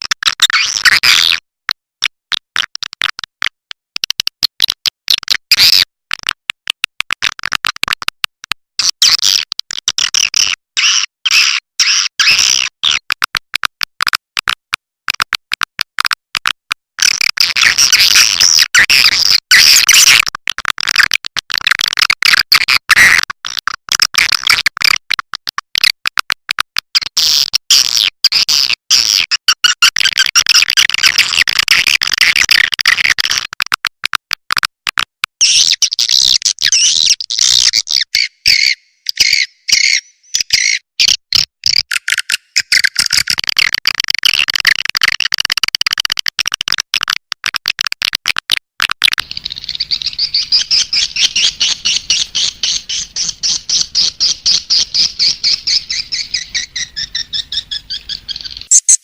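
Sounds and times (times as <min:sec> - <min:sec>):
rapid chirping of many birds: 0:49.2 - 0:58.9.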